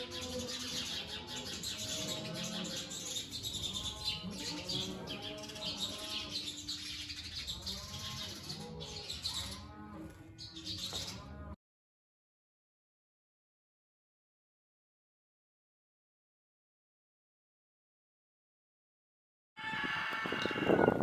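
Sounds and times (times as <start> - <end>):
chicks chirping and peeping: 0.0 - 11.6.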